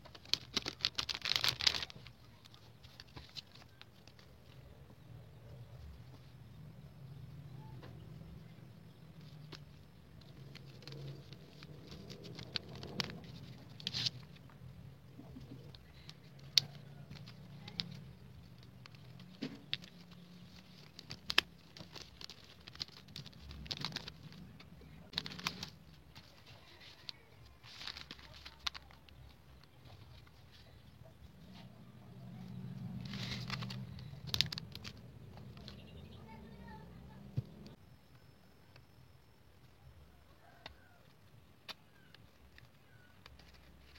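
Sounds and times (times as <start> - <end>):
hands handling packaging: 0.0 - 4.7, 8.2 - 30.9, 32.8 - 36.9, 41.6 - 43.9.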